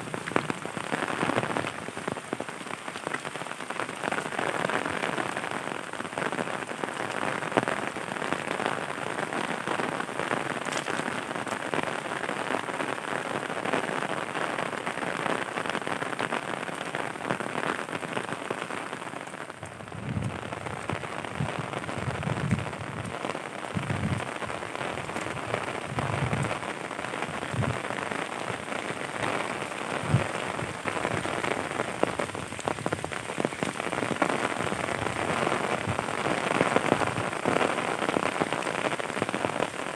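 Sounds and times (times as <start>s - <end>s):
heavy rain falling: 0.0s - 39.9s
short low thumps: 19.8s - 23.1s, 23.7s - 24.3s, 25.9s - 26.5s, 27.4s - 27.8s.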